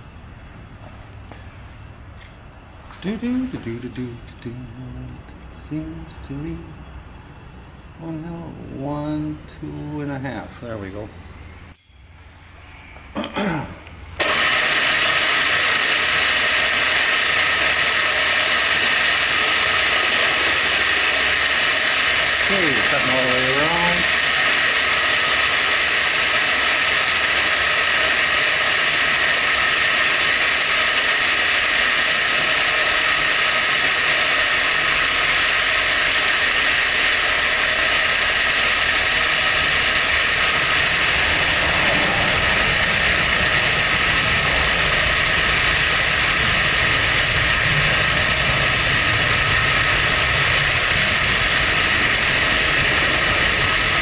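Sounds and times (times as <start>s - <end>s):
milling machine running: 14.2s - 54.0s
deep rumble: 39.4s - 54.0s.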